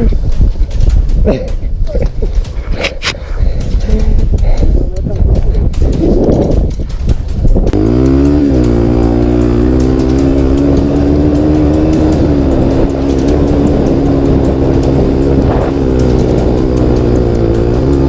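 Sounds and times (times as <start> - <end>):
motorcycle engine revving: 5.7 - 18.0.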